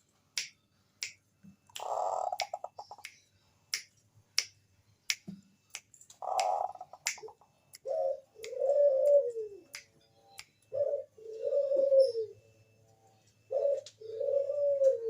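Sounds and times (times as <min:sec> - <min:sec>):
sharp clicks: 0:00.4 - 0:07.8
dove trilling and cooing: 0:01.8 - 0:03.1, 0:06.2 - 0:15.0.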